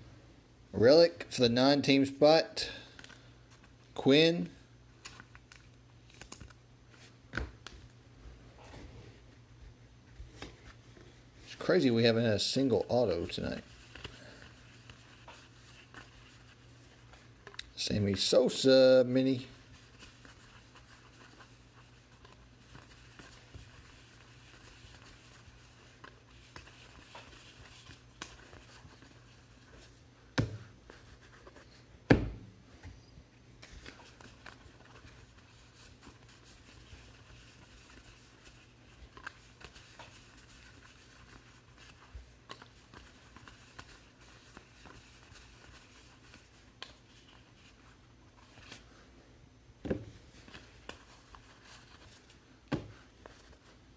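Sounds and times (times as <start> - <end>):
trading cards rustling and clicking: 5.0 - 7.9.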